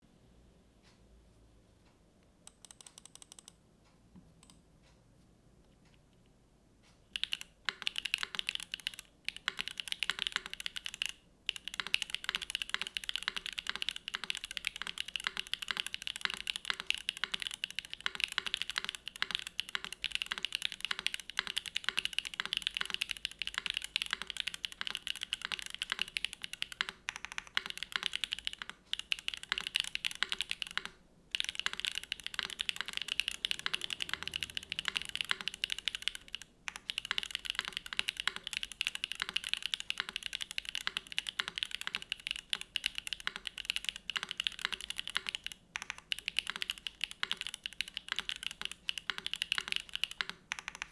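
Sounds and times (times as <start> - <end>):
mechanical keyboard typing: 2.4 - 3.6, 7.1 - 50.9.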